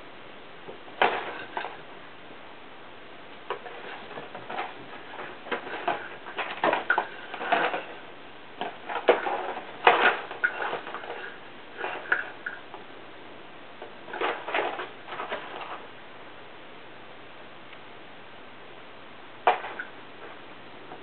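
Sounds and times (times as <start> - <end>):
cat scratching cardboard: 3.4 - 12.6.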